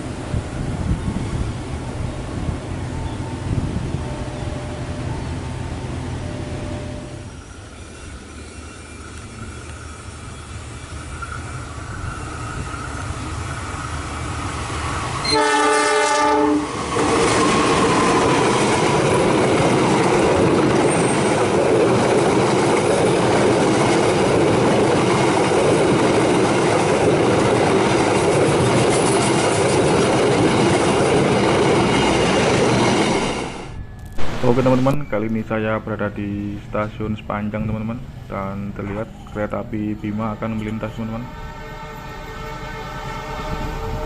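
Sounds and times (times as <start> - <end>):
train wheels rumbling on rails: 0.0 - 44.0
train horn: 15.2 - 18.2, 40.1 - 44.0.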